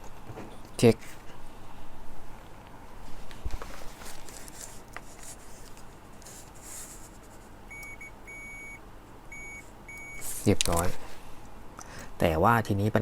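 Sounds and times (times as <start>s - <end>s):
multimeter continuity beep: 7.7s - 10.3s
clicks and rubbing of probes: 10.2s - 11.0s.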